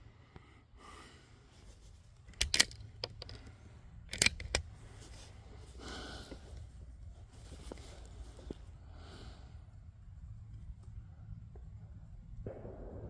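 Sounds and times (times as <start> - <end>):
rifle bolt metallic clicks: 2.3 - 4.8.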